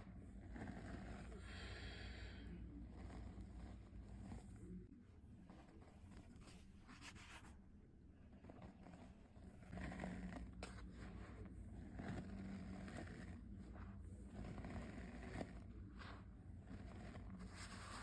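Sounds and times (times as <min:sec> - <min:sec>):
dry powder scraping and crunching: 0:00.1 - 0:04.8, 0:08.5 - 0:18.0.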